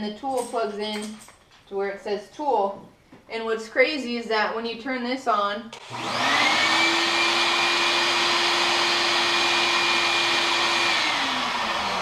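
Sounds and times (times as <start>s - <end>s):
shop vacuum running: 5.7s - 12.0s
orbital sander whine: 5.8s - 12.0s.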